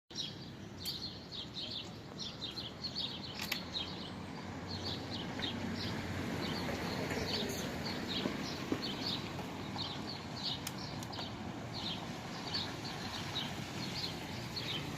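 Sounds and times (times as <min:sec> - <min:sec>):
small birds chirping: 0:00.1 - 0:14.9
sharp clicks: 0:03.3 - 0:03.8, 0:10.5 - 0:11.3.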